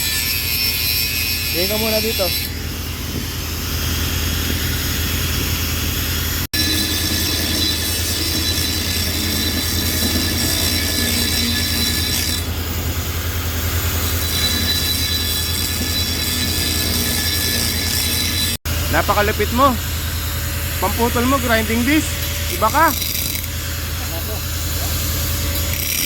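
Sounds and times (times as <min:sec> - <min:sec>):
angle grinder cutting metal: 0:00.0 - 0:26.0
low hum: 0:02.4 - 0:07.0.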